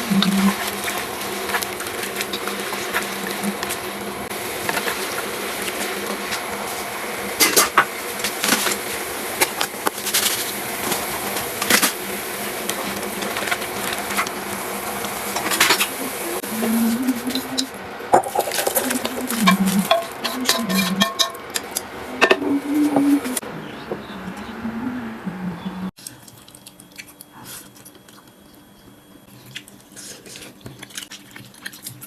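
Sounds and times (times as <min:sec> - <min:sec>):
steady hiss: 0:00.0 - 0:21.1
low wavering hum: 0:00.0 - 0:30.5
utensils clinking against dishes: 0:17.3 - 0:23.4.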